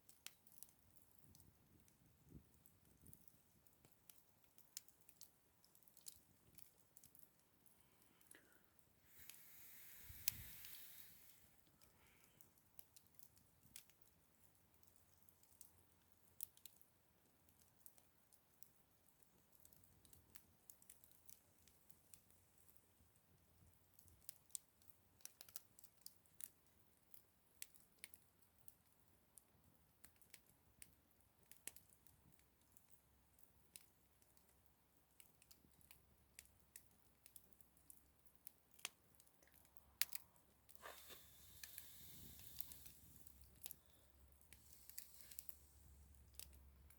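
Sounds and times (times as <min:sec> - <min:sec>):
campfire crackling and popping: 0:00.0 - 0:46.9
faint hiss: 0:07.6 - 0:13.1, 0:40.6 - 0:46.9.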